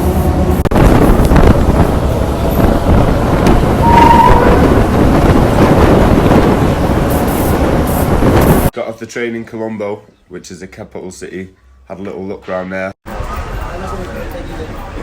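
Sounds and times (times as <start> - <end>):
passenger train on rails: 0.0 - 8.7, 13.1 - 15.0
wind rushing over microphone: 0.3 - 8.7
short high tone: 3.8 - 4.8.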